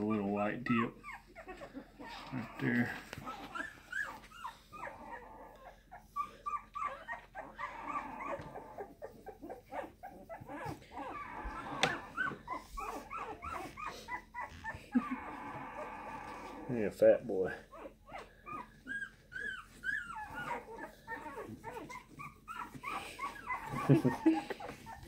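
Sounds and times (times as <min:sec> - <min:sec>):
puppies whimpering and squealing: 0:00.0 - 0:25.0.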